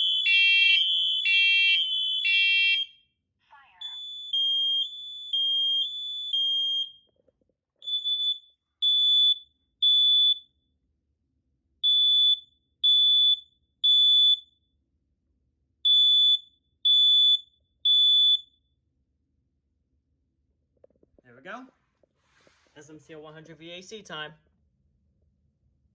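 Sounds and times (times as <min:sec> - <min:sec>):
smoke alarm high beeps: 0:00.0 - 0:03.0, 0:03.7 - 0:07.1, 0:07.8 - 0:10.5, 0:11.8 - 0:14.5, 0:15.9 - 0:18.5
alarm two-tone beep: 0:03.8 - 0:06.9.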